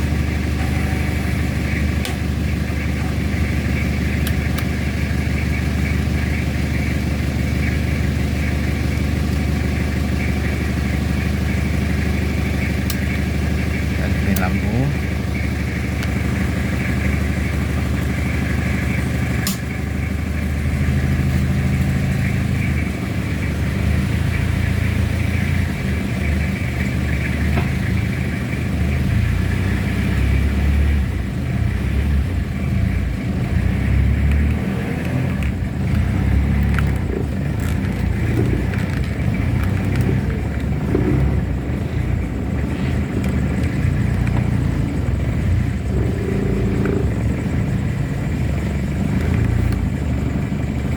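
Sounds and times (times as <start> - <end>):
diesel engine running: 0.0 - 50.9.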